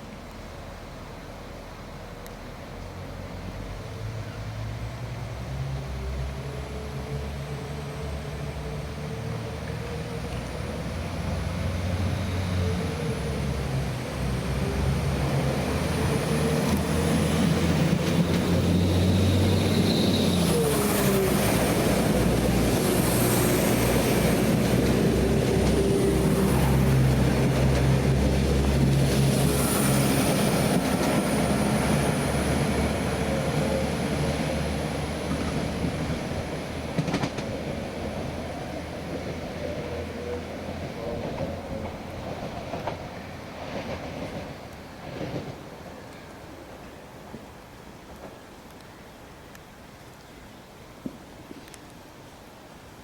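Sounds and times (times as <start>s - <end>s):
train running through: 3.0s - 47.4s.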